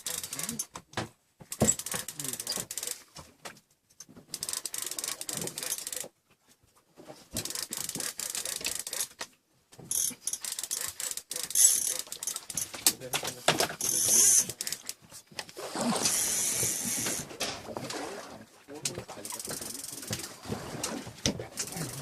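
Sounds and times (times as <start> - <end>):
fishing reel clicking: 0.0 - 0.7, 1.7 - 3.1, 4.3 - 6.1, 7.4 - 9.2, 9.9 - 12.8, 13.8 - 15.0, 19.2 - 20.3, 21.6 - 22.0.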